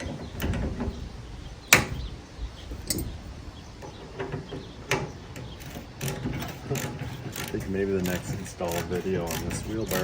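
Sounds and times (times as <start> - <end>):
tools knocking and clacking: 2.8 - 3.2.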